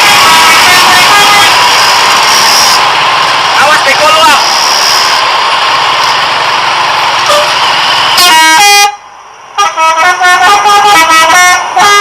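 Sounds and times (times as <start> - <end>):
multi-tone musical bus horn: 0.0 - 1.6, 7.2 - 7.6, 8.2 - 12.0
loud steady rushing noise: 0.0 - 12.0.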